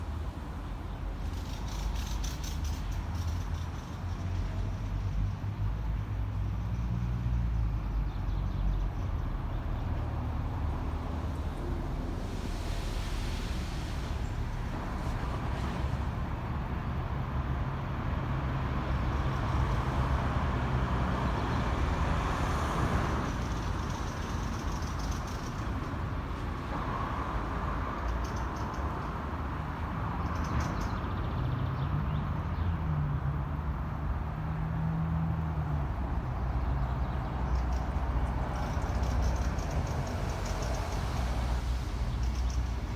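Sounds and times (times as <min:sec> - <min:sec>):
engine hum: 0:00.0 - 0:30.7
rumble of passing traffic: 0:00.0 - 0:42.9.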